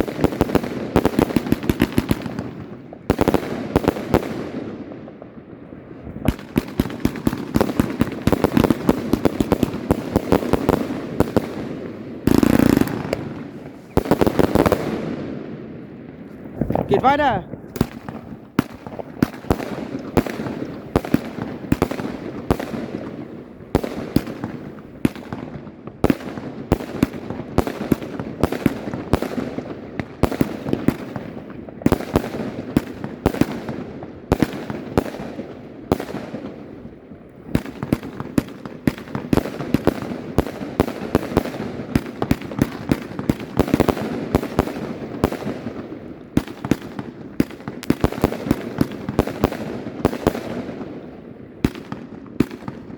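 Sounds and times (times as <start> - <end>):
fireworks shots and bursts: 0.0 - 52.9.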